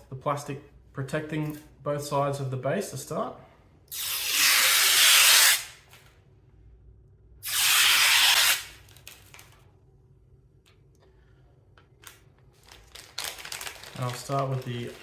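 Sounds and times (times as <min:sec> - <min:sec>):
plastic film being peeled off: 0:07.5 - 0:09.6, 0:12.0 - 0:15.0.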